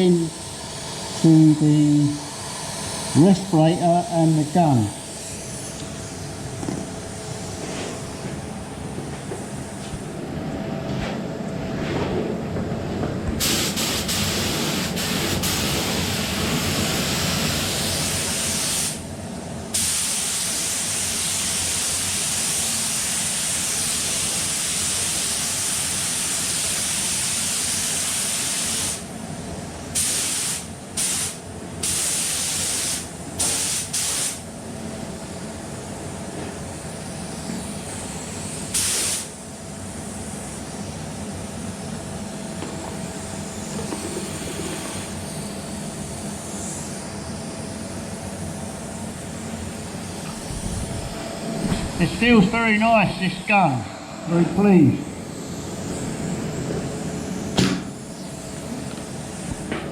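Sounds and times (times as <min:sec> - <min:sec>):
paint spray gun hissing: 0:00.0 - 0:06.8, 0:13.4 - 0:19.0, 0:19.8 - 0:29.0, 0:30.0 - 0:34.4, 0:38.1 - 0:39.4, 0:42.9 - 0:47.1.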